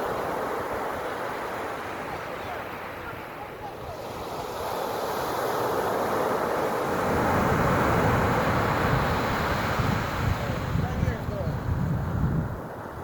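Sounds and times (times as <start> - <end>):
ocean waves breaking: 0.0 - 13.0.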